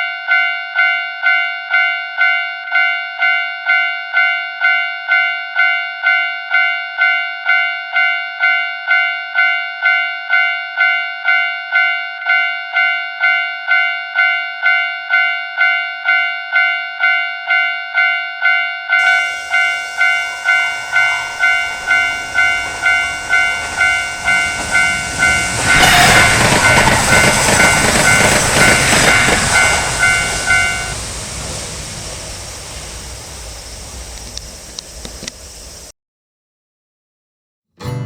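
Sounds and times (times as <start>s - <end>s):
crossing warning bell: 0.0s - 35.3s
train passing: 19.0s - 35.9s.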